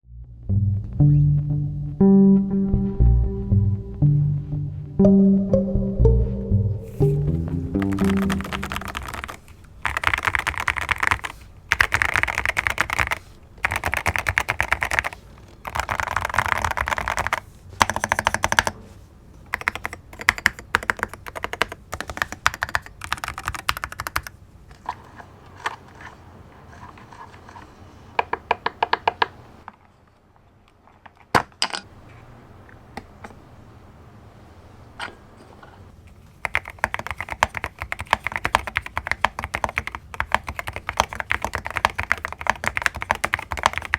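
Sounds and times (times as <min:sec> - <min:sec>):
mechanical keyboard typing: 0:07.8 - 0:18.8, 0:19.5 - 0:24.3, 0:36.4 - 0:43.9.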